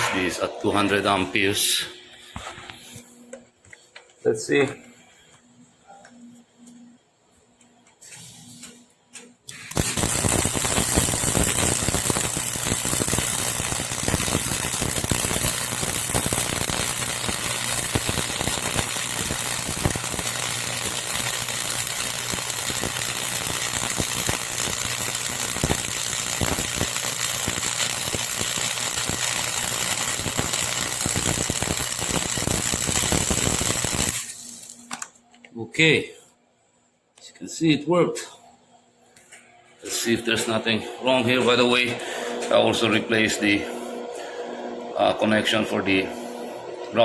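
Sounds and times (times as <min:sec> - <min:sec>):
welding arc crackling and sizzling: 0:00.0 - 0:03.1, 0:08.0 - 0:35.2, 0:39.8 - 0:47.0.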